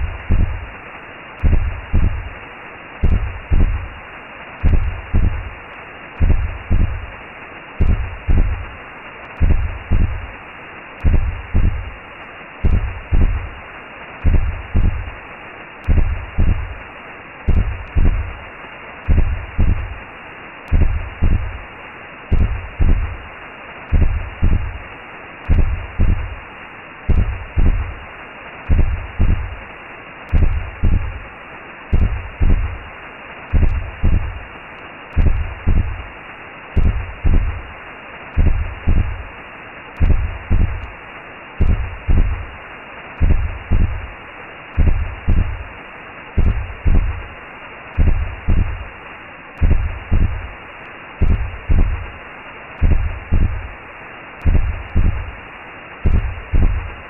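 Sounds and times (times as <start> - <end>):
slow heartbeat: 0.0 - 0.8, 1.4 - 2.4, 3.0 - 4.0, 4.6 - 5.6, 6.2 - 7.2, 7.8 - 10.4, 11.0 - 12.0, 12.6 - 13.6, 14.2 - 15.2, 15.8 - 16.8, 17.5 - 20.0, 20.7 - 21.6, 22.3 - 23.3, 23.9 - 26.4, 27.1 - 28.0, 28.7 - 29.6, 30.3 - 31.2, 31.9 - 32.9, 33.5 - 34.5, 35.1 - 36.1, 36.8 - 37.7, 38.4 - 39.3, 40.0 - 41.0, 41.6 - 42.6, 43.2 - 44.2, 44.8 - 45.8, 46.4 - 47.4, 48.0 - 48.9, 49.6 - 50.6, 51.2 - 52.2, 52.8 - 53.8, 54.4 - 55.4, 56.0 - 57.0
steady whooshing noise: 0.0 - 57.0.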